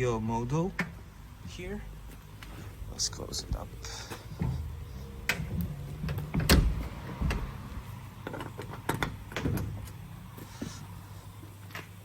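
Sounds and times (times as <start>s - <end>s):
metal panels knocking and clicking: 5.3s - 7.6s, 8.2s - 10.0s.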